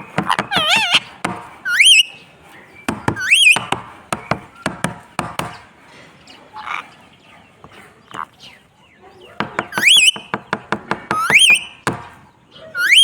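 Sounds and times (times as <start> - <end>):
parrot whistled calls: 0.3 - 1.1, 1.7 - 2.2, 3.2 - 3.7, 9.6 - 10.3, 11.1 - 11.8, 12.6 - 13.0.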